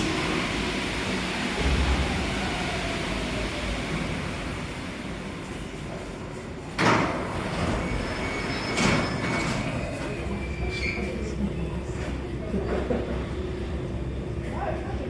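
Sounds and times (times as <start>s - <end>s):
train running and slowing: 0.0s - 15.0s
train doors sliding open: 4.0s - 13.4s.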